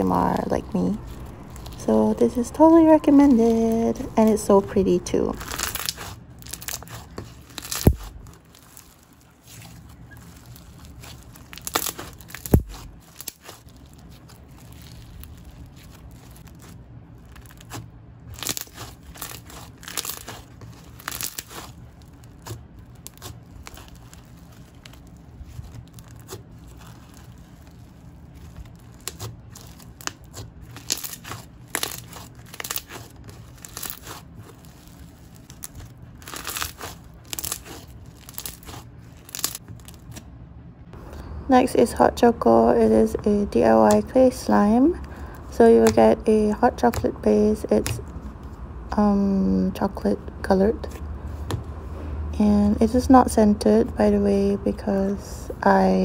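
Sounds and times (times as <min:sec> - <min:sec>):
crunchy slime squished by hand: 0:00.6 - 0:40.3.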